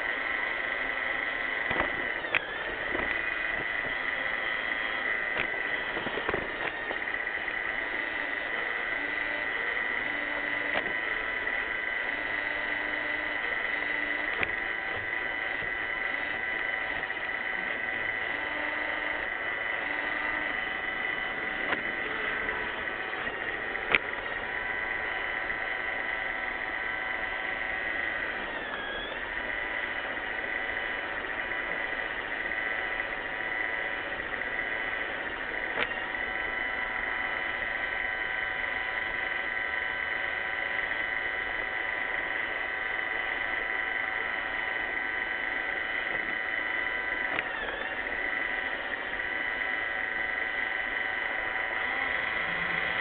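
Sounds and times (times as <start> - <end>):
robot vacuum running: 0.0 - 53.0
sharp click: 1.6 - 4.2, 4.8 - 7.1, 10.6 - 11.1, 14.2 - 15.8, 23.2 - 24.2, 35.7 - 36.1, 47.3 - 48.0.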